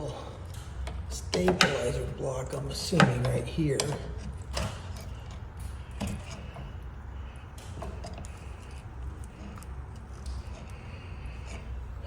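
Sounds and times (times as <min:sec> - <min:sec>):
steady low hum: 0:00.0 - 0:12.0
hand tool knocking and scraping: 0:01.2 - 0:06.7.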